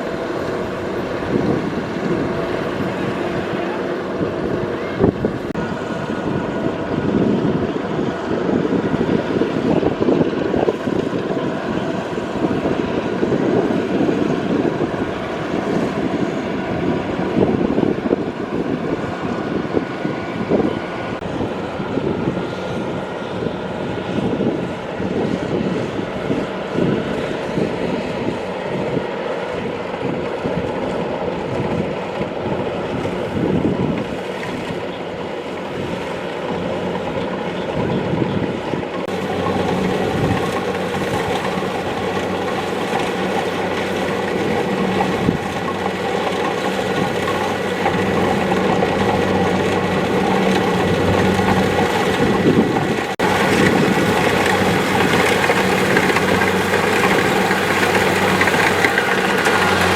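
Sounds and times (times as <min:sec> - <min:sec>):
combine harvester running: 0:00.0 - 0:59.9.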